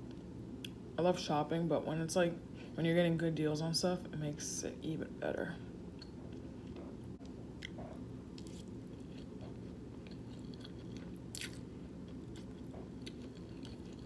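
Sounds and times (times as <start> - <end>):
low background hum: 0.0 - 14.0
person chewing food: 5.9 - 14.0.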